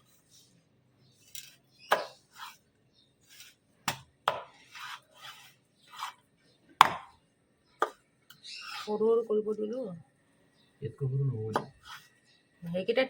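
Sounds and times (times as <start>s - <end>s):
knife scraping: 1.2s - 2.6s, 3.2s - 3.6s, 4.5s - 6.2s, 8.4s - 9.0s, 11.8s - 12.2s.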